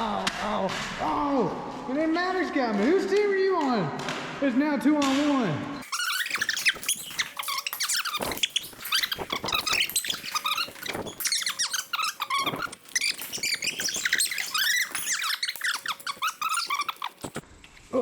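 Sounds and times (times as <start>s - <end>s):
rapid high-pitched squeaking: 5.8s - 17.4s.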